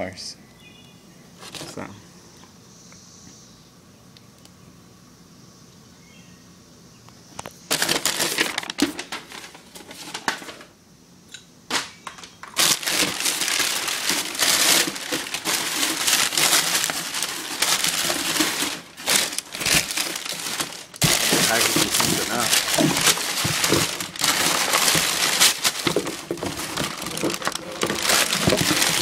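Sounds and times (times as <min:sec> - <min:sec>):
packaging crinkling: 0:07.7 - 0:10.6, 0:11.7 - 0:29.0.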